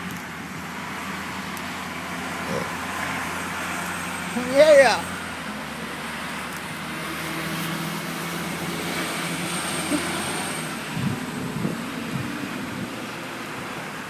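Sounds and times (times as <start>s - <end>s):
vehicle hum and hiss: 0.0s - 14.0s.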